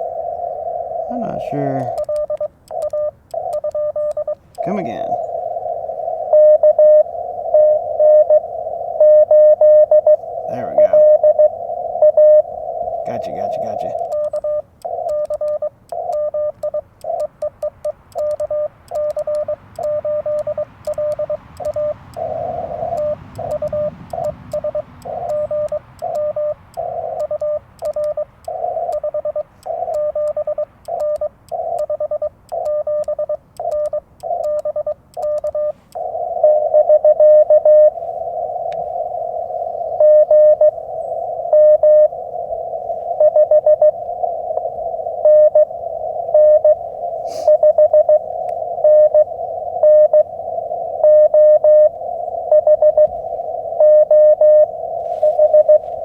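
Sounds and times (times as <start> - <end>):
morse code tones: 0.0 - 56.0
radio receiver hiss: 0.0 - 56.0
paddle key clicks: 29.6 - 36.0.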